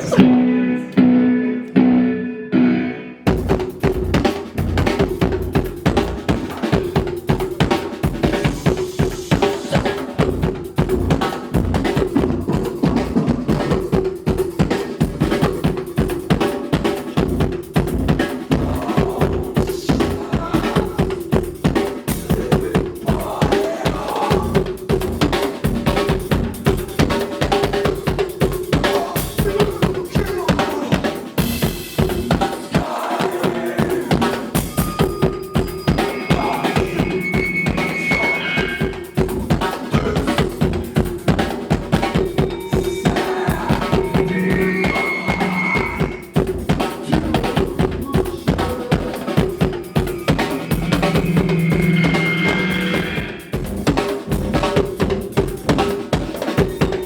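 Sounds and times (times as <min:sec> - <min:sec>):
rock band playing: 0:00.0 - 0:23.4, 0:33.7 - 0:57.0
fast drum-kit hits: 0:03.3 - 0:57.0
short high-pitched tones: 0:34.6 - 0:39.2, 0:42.4 - 0:46.4, 0:49.5 - 0:53.6
steady held note: 0:34.6 - 0:39.2, 0:42.4 - 0:46.5, 0:49.2 - 0:53.8.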